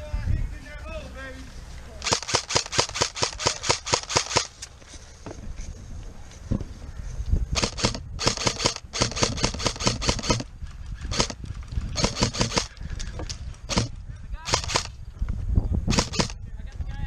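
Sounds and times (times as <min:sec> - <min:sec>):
airsoft gun rapid shots: 0:02.0 - 0:04.5, 0:07.6 - 0:10.5, 0:11.1 - 0:11.4, 0:12.0 - 0:12.8, 0:13.7 - 0:13.9, 0:14.5 - 0:14.9, 0:15.9 - 0:16.4.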